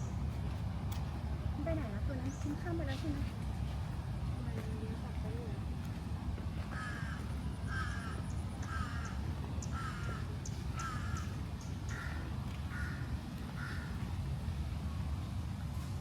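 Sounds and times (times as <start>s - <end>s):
steady low rumble: 0.0s - 16.0s
crow cawing: 6.7s - 14.0s.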